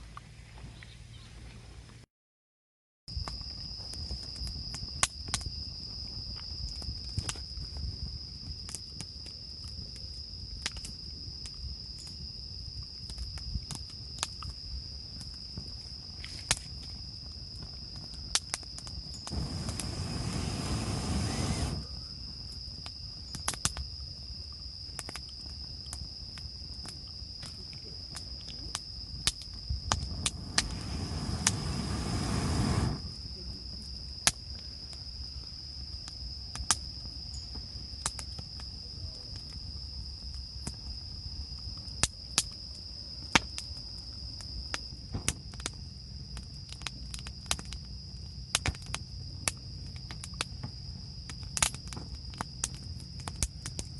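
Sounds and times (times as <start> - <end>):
insects chirring: 3.1 - 53.9
rushes of noise: 19.3 - 22.0, 29.9 - 33.2.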